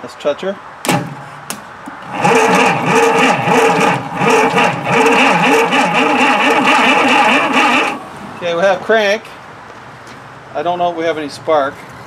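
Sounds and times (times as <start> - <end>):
starter motor cranking engine: 1.9 - 8.1.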